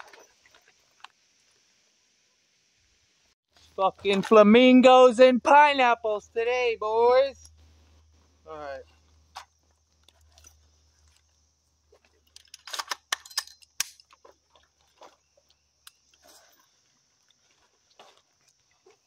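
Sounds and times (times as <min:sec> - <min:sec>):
firearm handling clicks and rattles: 0:12.2 - 0:14.2.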